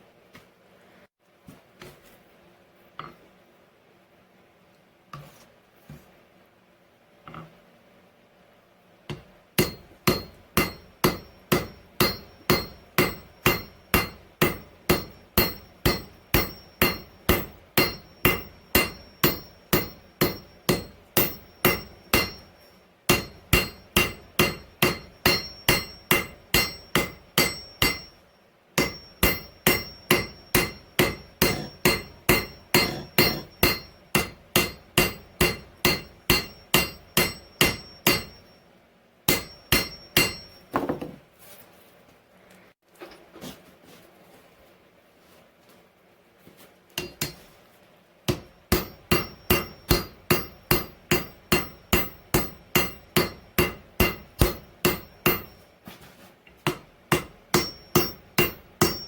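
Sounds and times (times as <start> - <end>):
hammer ringing on steel anvil: 9.1 - 38.6, 39.3 - 41.0, 47.0 - 47.4, 48.3 - 55.7, 56.7 - 59.0.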